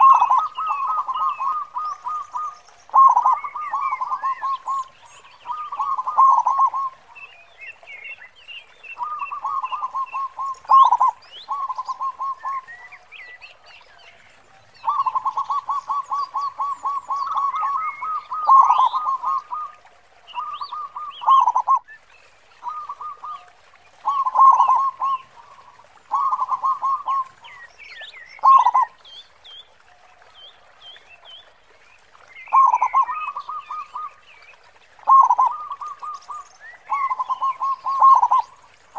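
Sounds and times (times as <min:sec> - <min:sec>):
dove cooing: 0:00.0 - 0:07.0, 0:14.8 - 0:19.8, 0:20.4 - 0:21.8, 0:22.7 - 0:27.4, 0:32.5 - 0:34.1, 0:35.1 - 0:36.2, 0:36.9 - 0:38.5.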